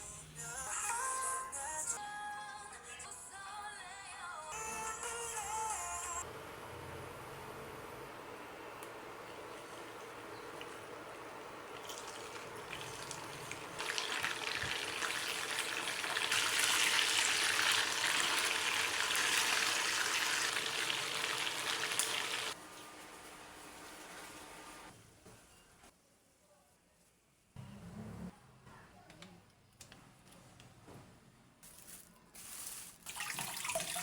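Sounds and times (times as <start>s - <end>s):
water running from kitchen tap: 9.2s - 22.6s, 33.1s - 34.0s.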